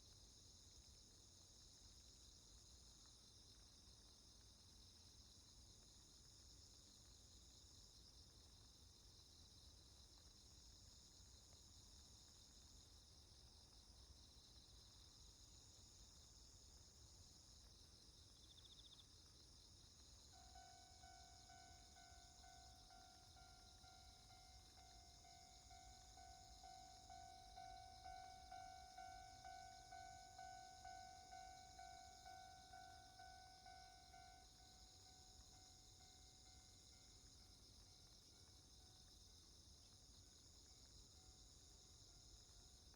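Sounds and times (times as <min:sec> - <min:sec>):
crickets chirping: 0:00.0 - 0:42.9
level crossing alarm ringing: 0:20.4 - 0:36.1.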